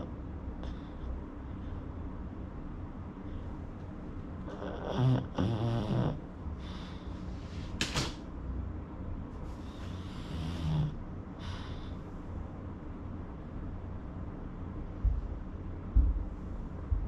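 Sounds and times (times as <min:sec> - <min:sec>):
dog snoring: 0:04.4 - 0:07.0, 0:09.6 - 0:11.9.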